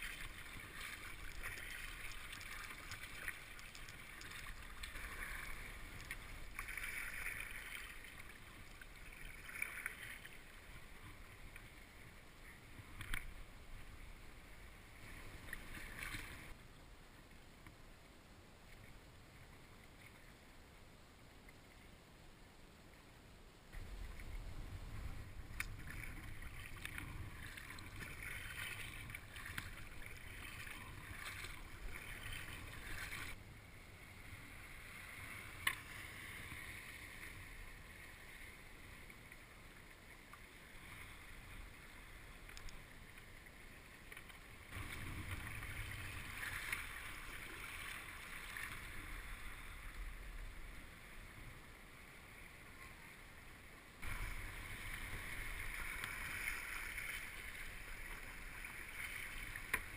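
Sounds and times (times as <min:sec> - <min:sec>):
kayak paddle in water: 0:00.0 - 0:59.9
low rumble: 0:23.8 - 0:27.9.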